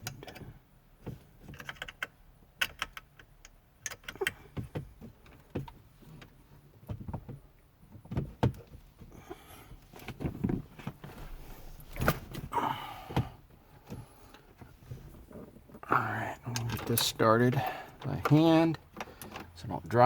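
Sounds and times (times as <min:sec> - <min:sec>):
rustling: 0:09.8 - 0:12.6.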